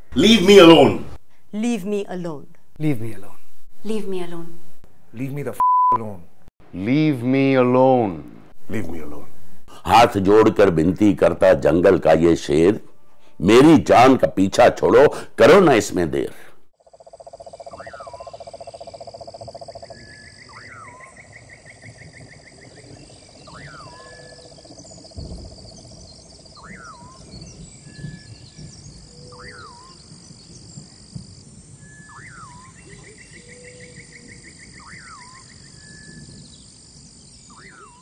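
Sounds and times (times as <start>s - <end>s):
high-pitched insect drone: 16.8s - 34.0s, 34.8s - 38.0s
sweeping animal call: 17.0s - 28.4s, 29.0s - 30.1s, 37.5s - 38.0s.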